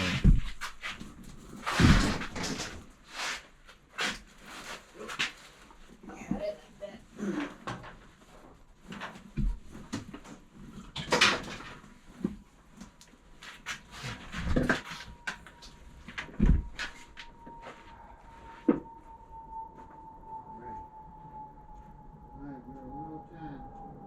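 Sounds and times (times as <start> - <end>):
objects knocking and rattling: 0.2 - 2.9, 8.8 - 12.4
faint steady high tone: 14.3 - 24.0.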